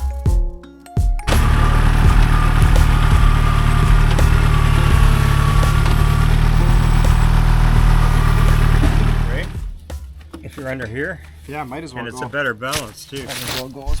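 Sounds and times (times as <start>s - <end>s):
tractor diesel engine running: 1.3s - 9.8s.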